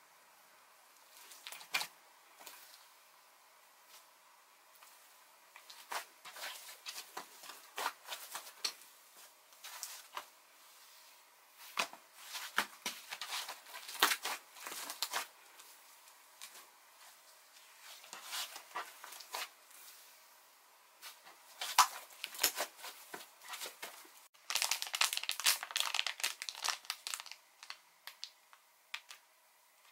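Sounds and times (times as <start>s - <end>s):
hands kneading slime: 4.9s - 19.6s.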